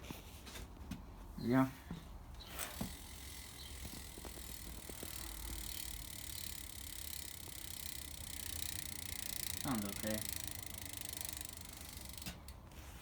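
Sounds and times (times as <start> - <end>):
bicycle hub ratchet clicking: 2.5 - 12.6.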